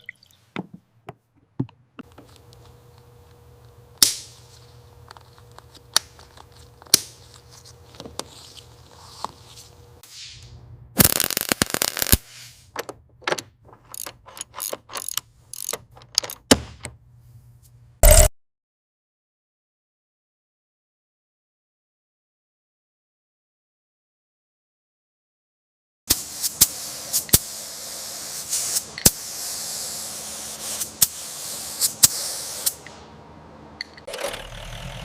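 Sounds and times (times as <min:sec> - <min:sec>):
rattling clicks: 0:12.8 - 0:16.5
tools clicking and knocking: 0:12.8 - 0:17.0.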